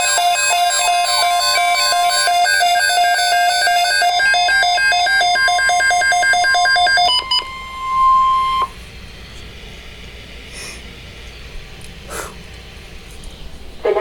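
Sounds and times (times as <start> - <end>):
electronic beeping melody: 0.0 - 8.8.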